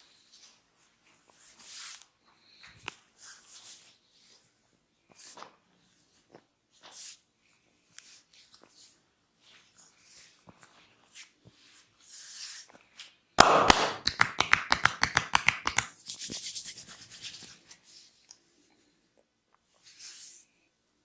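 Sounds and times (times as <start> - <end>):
hands slapping skin: 13.4 - 16.3
hands rubbing over skin: 13.4 - 17.9.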